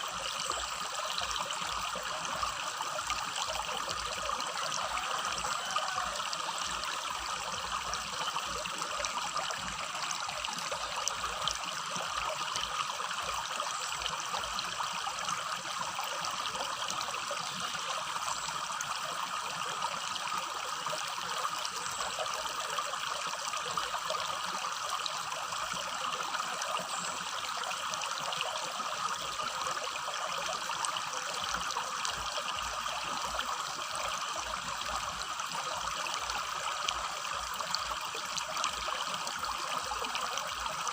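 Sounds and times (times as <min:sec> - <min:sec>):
stream babbling over stones: 0:00.0 - 0:40.9.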